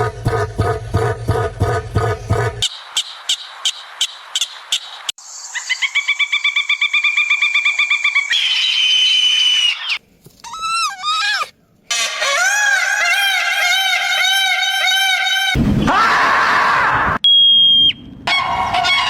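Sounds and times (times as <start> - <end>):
high animal chirps: 5.5 - 15.6
swooping animal calls: 5.6 - 15.6.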